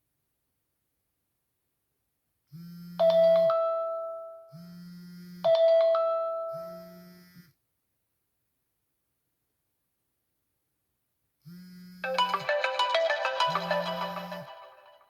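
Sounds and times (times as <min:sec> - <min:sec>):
phone vibration buzz: 0:02.5 - 0:03.5, 0:04.5 - 0:07.6, 0:11.4 - 0:12.5, 0:13.1 - 0:14.9
bell-like ringtone chimes: 0:03.0 - 0:04.5, 0:05.5 - 0:07.0, 0:12.0 - 0:15.0.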